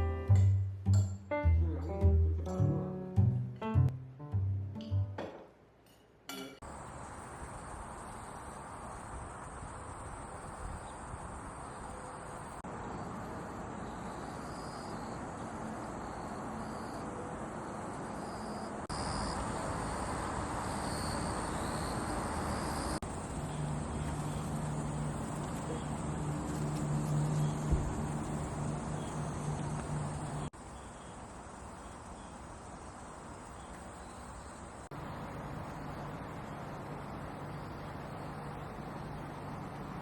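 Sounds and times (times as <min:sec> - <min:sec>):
high insect trill: 0:06.6 - 0:39.7.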